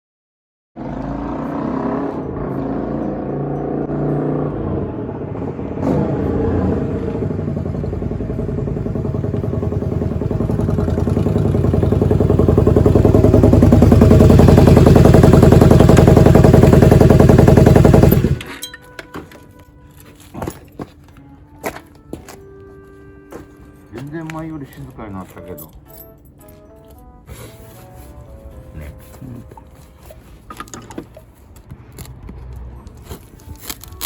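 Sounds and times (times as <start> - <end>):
motorcycle engine running: 0.8 - 18.5.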